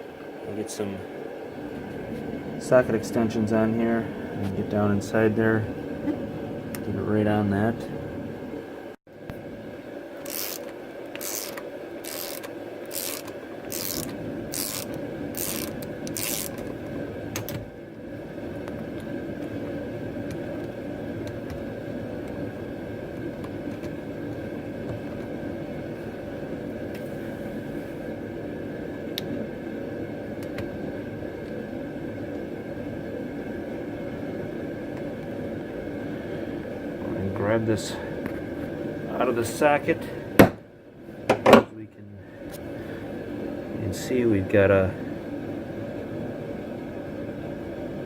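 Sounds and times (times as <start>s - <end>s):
steady hum: 0.0s - 48.0s
socket ratchet clicking: 10.3s - 16.6s.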